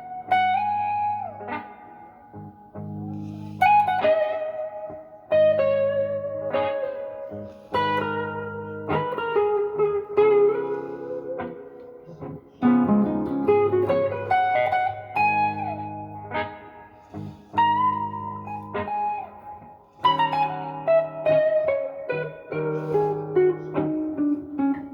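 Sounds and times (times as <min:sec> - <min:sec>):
blues electric guitar lead: 0:00.0 - 0:24.9
sustained guitar chords: 0:00.0 - 0:24.9.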